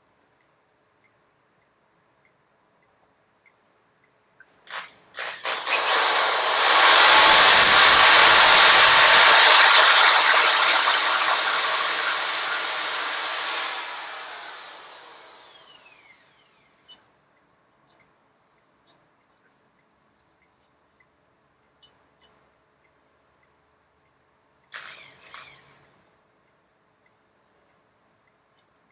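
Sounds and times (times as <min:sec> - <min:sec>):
drill bit grinding: 0:05.2 - 0:16.4
electric drill motor whine: 0:05.2 - 0:16.6.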